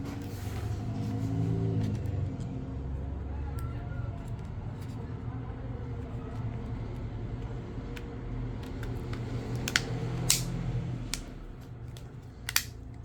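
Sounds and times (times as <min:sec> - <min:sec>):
plastic clips snapping: 0:08.0 - 0:13.0.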